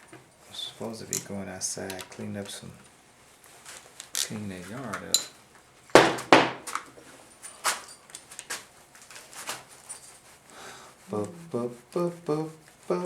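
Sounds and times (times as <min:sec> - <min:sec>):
hand tools clicking on metal parts: 0:01.0 - 0:02.5, 0:03.7 - 0:05.4
sharp knocks: 0:06.0 - 0:06.7.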